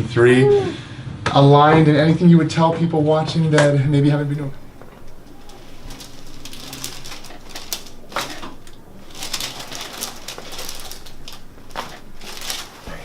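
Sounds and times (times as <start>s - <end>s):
soft rustling and scraping: 3.8s - 13.0s.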